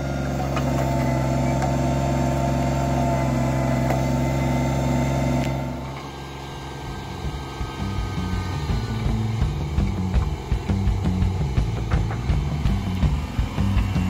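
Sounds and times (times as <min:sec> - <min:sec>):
tractor diesel engine running: 0:00.0 - 0:14.0.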